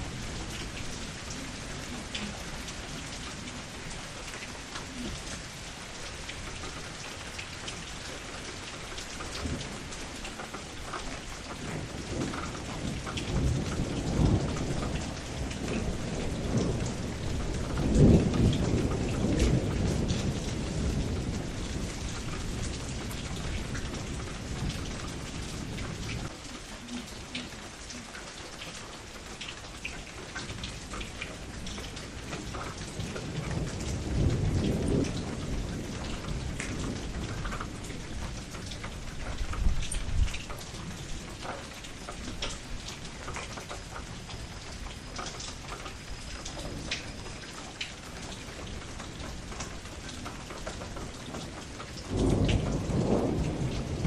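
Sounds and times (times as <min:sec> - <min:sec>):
steady rain: 0:00.0 - 0:54.0
low thunder rolls: 0:11.2 - 0:26.3, 0:30.6 - 0:41.3, 0:50.8 - 0:54.0.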